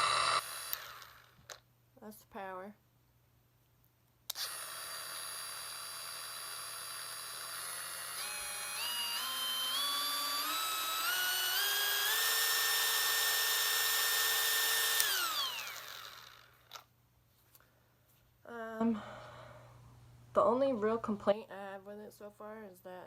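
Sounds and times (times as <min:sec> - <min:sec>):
die grinder motor whine: 0:00.0 - 0:01.6, 0:04.3 - 0:16.8.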